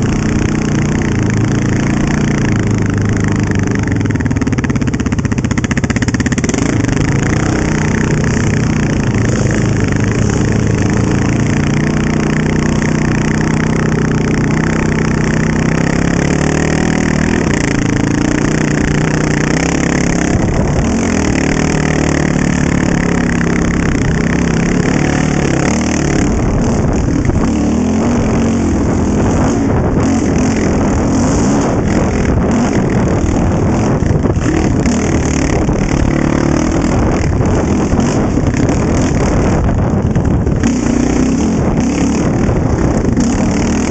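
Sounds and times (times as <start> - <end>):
atv engine revving: 0.0 - 43.9
wind noise: 0.0 - 43.9.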